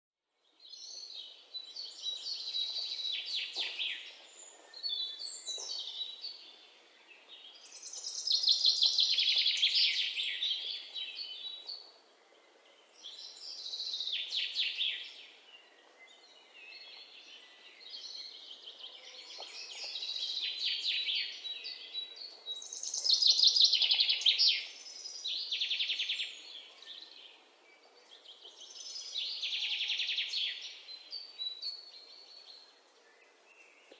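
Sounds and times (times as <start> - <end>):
songbirds chirping and trilling: 0.4 - 33.9.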